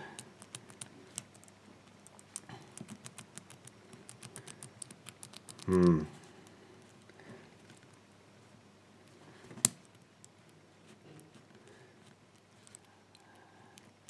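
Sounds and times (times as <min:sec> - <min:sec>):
person humming: 0:05.6 - 0:06.2.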